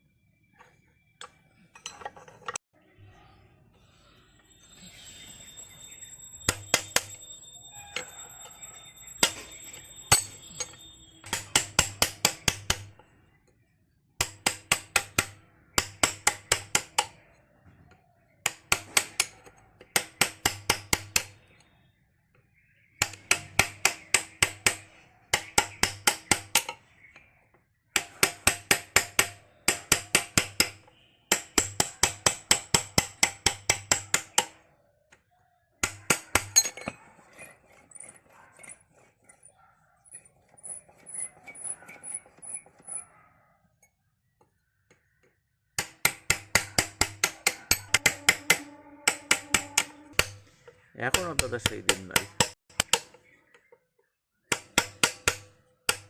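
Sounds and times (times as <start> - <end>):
hammer striking metal: 6.4 - 13.1, 14.2 - 17.2, 18.5 - 21.4, 23.0 - 27.1, 28.0 - 34.6, 35.8 - 37.0, 45.8 - 53.2, 54.5 - 56.0.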